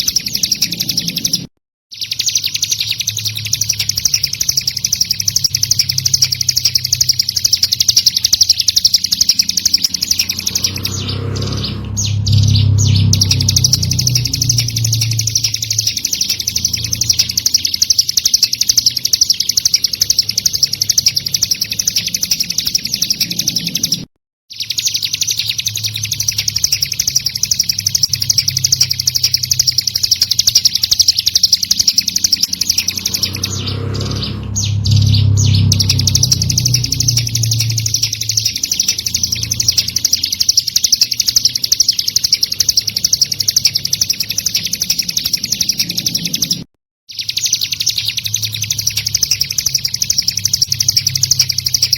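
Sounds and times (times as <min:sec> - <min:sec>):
rapid high-pitched bird trill: 0:00.0 - 0:51.9
steady low hum: 0:03.4 - 0:21.9, 0:26.3 - 0:41.4
low rumble: 0:08.8 - 0:17.4, 0:31.4 - 0:40.1.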